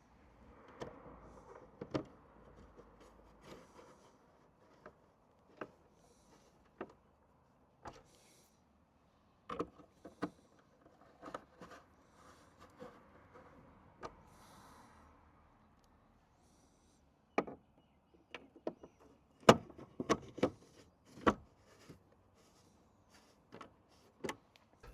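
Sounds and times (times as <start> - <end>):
plastic parts clicking and knocking: 0.7 - 7.0, 9.4 - 11.9, 17.4 - 17.6, 18.2 - 22.0, 23.5 - 24.9.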